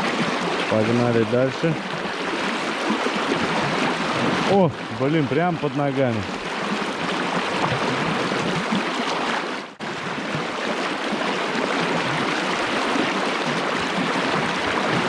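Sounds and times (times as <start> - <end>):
river water rushing: 0.0 - 15.0.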